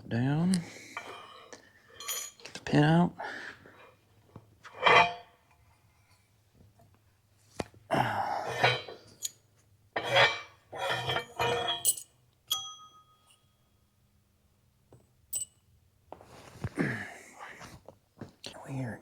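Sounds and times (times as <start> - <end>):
metal clanks and scrapes: 0.9 - 2.6, 4.6 - 5.3, 8.4 - 9.3, 10.0 - 12.1.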